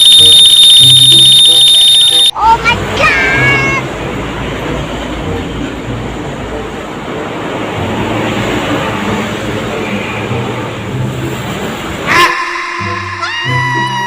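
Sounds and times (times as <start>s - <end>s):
even rushing noise: 7.5s - 14.0s.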